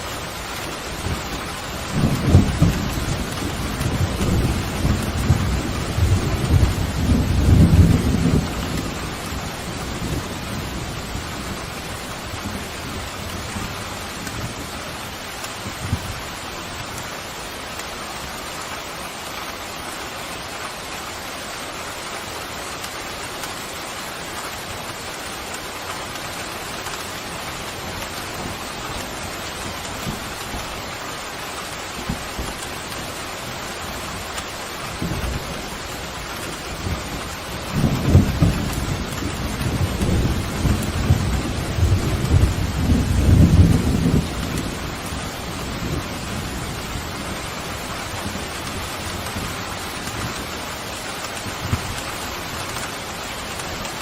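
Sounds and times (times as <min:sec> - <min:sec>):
heavy rain: 0:00.0 - 0:54.0
thunder rumbling: 0:01.0 - 0:16.2, 0:34.0 - 0:54.0.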